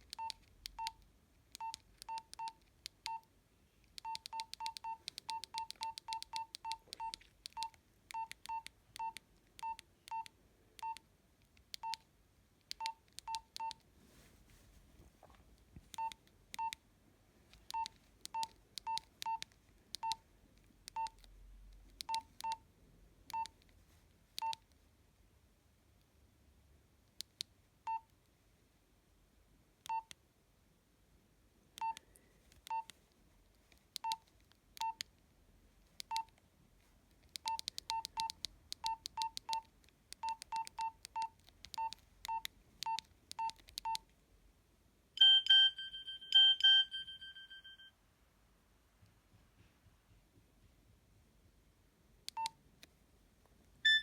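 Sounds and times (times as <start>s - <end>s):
keypad beeps: 0.1s - 1.0s, 1.6s - 3.3s, 4.0s - 11.0s, 11.7s - 12.0s, 12.7s - 13.8s, 15.9s - 16.8s, 17.7s - 20.2s, 20.9s - 21.2s, 22.0s - 22.6s, 23.3s - 23.6s, 24.4s - 24.6s, 27.9s - 28.1s, 29.9s - 30.1s, 31.8s - 32.0s, 32.7s - 32.9s, 34.0s - 34.2s, 34.8s - 35.0s, 36.0s - 36.3s, 37.4s - 44.0s, 45.2s - 47.9s, 52.3s - 52.6s
phone ringtone: 45.2s - 47.9s.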